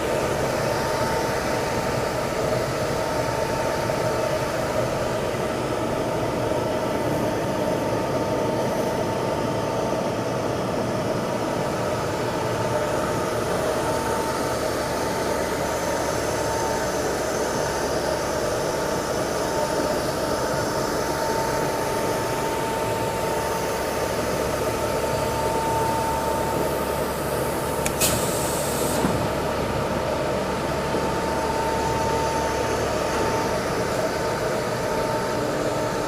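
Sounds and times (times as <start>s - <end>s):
paddle mixer humming and whining: 0.0s - 36.0s.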